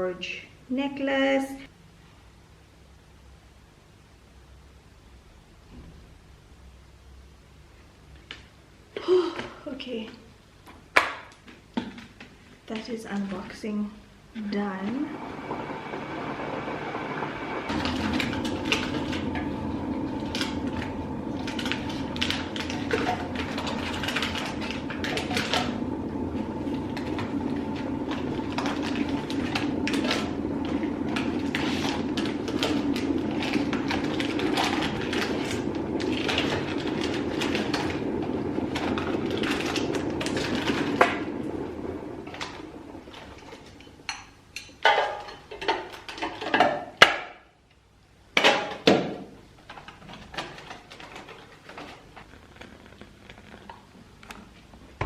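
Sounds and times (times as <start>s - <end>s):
steady hum: 13.7s - 44.7s.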